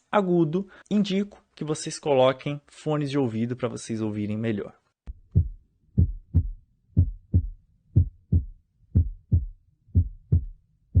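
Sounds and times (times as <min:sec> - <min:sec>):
heartbeat through stethoscope: 0:05.1 - 0:11.0.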